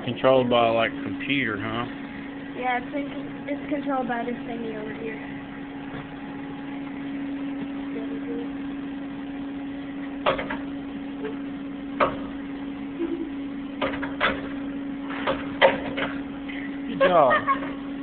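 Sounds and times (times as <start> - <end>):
machinery humming: 0.0 - 18.0.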